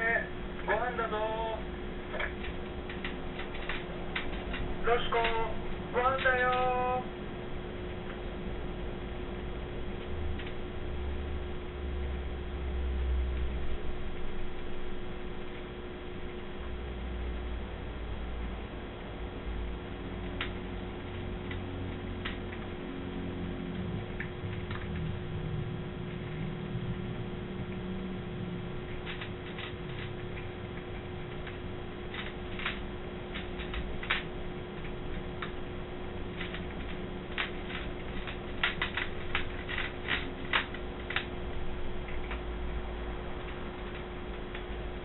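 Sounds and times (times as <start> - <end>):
cats eating from bowls: 0.0 - 7.0, 19.7 - 45.0
steady low hum: 0.0 - 45.0.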